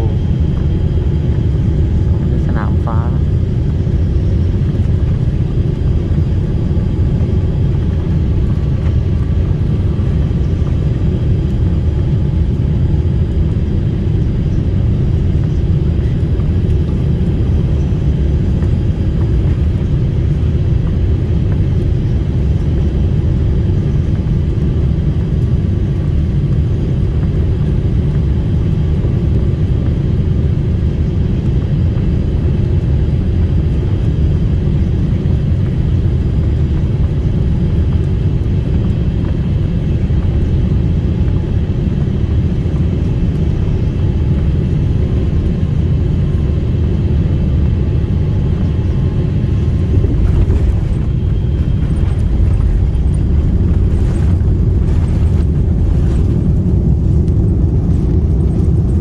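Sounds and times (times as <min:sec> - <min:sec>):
engine and airflow rumble: 0:00.0 - 0:59.0
faint steady whine: 0:00.0 - 0:59.0.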